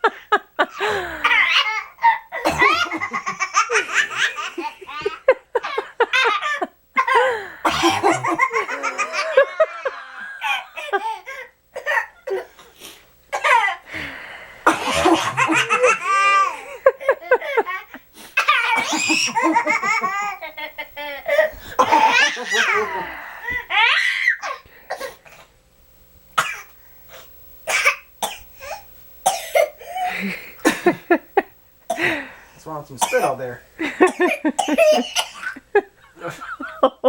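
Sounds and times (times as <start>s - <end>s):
baby belly-laughing: 1.0s - 5.1s, 15.0s - 16.7s, 21.2s - 23.0s
adult fake coughing: 2.4s - 3.2s, 7.0s - 9.0s, 13.3s - 13.8s, 14.7s - 16.5s, 18.4s - 19.4s, 21.8s - 23.1s, 27.7s - 30.1s, 33.0s - 35.6s.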